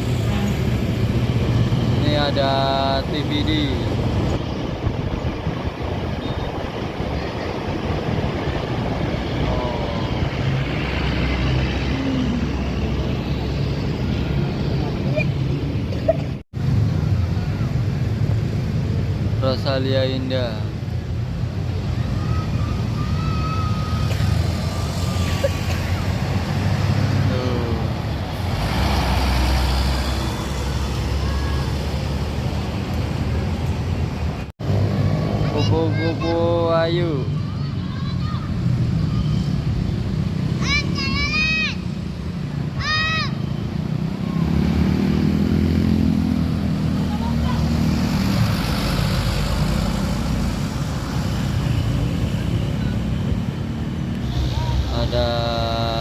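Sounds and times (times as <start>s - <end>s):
bus engine rumble: 0.0s - 19.4s, 20.7s - 36.4s
bus driving past: 21.7s - 36.2s, 43.3s - 56.0s.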